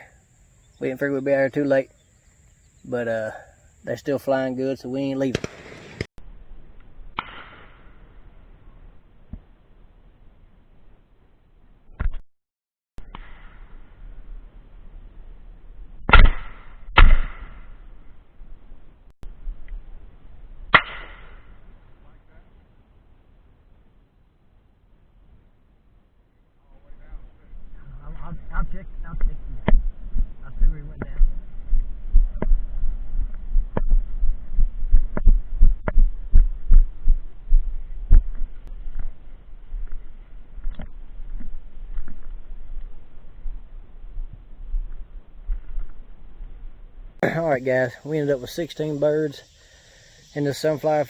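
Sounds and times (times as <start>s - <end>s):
shotgun blasts with echo: 5.2s - 6.1s, 7.1s - 8.0s, 16.1s - 17.7s, 20.7s - 21.4s.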